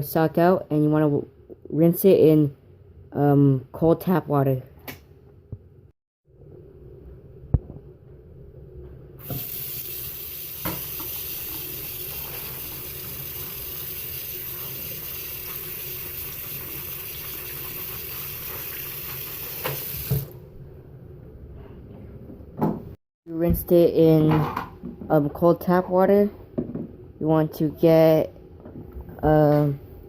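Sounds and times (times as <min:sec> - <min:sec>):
tap water running into sink: 0:09.2 - 0:20.4.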